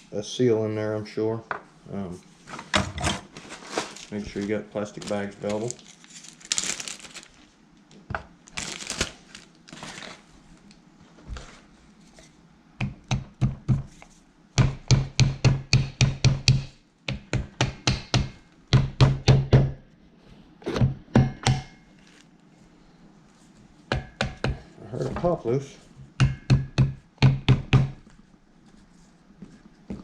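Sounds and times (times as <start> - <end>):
plastic bag rustling: 3.3 - 7.6, 8.4 - 11.8.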